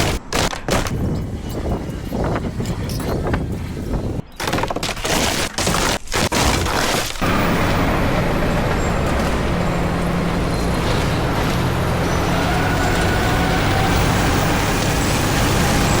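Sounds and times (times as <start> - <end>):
vehicle engine and road noise: 7.2 - 16.0.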